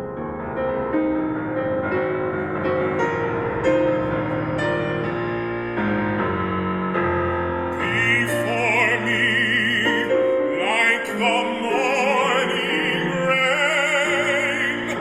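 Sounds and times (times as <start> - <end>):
solo piano chords: 0.0 - 15.0
person singing art song: 7.7 - 15.0.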